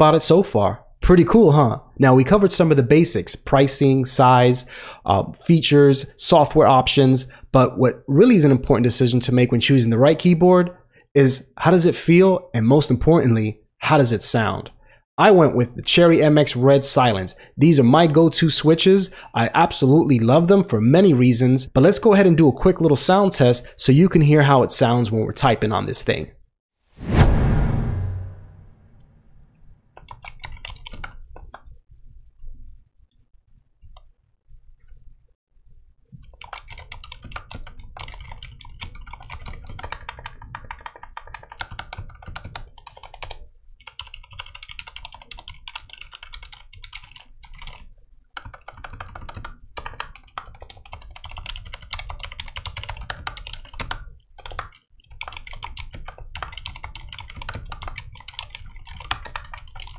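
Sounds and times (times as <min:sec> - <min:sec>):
typing on mechanical keyboard: 0:30.0 - 0:31.6, 0:36.2 - 0:59.9.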